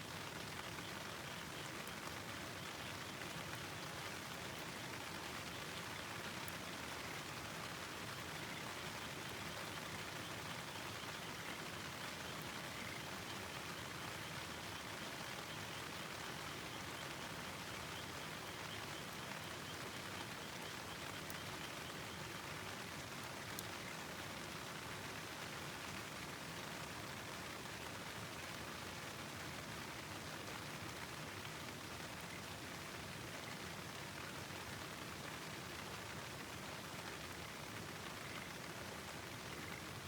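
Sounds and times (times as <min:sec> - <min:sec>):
rain: 0:00.0 - 0:40.0.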